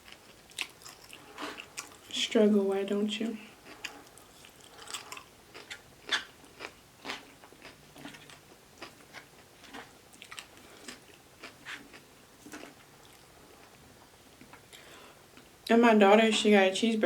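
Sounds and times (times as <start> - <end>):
chewing and biting food: 0.0 - 2.2, 3.6 - 13.8.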